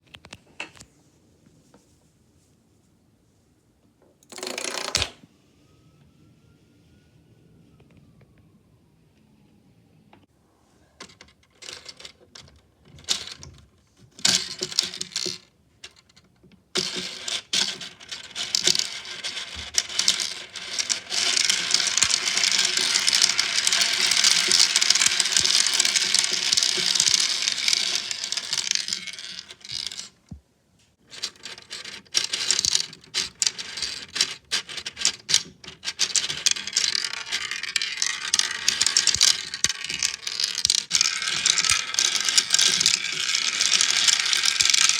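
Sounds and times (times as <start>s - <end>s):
marbles clattering through plastic run: 4.3s - 5.2s, 11.6s - 13.6s, 14.2s - 16.2s, 16.8s - 30.2s, 31.1s - 44.9s.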